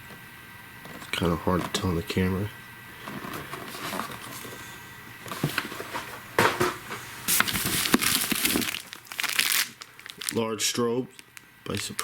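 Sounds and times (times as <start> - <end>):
plastic wrap crinkling: 5.3 - 12.0.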